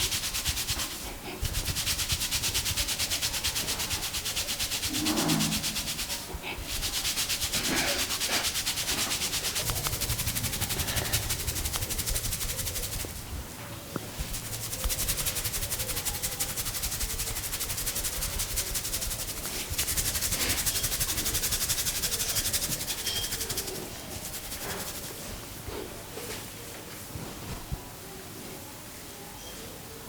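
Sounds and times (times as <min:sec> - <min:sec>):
hands rubbing scalp and hair: 0:00.0 - 0:13.4, 0:14.0 - 0:25.4.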